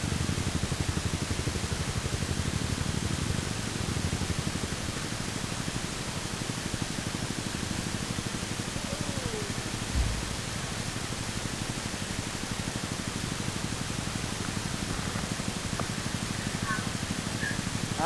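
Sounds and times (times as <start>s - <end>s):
steady rushing hiss: 6.7s - 18.0s.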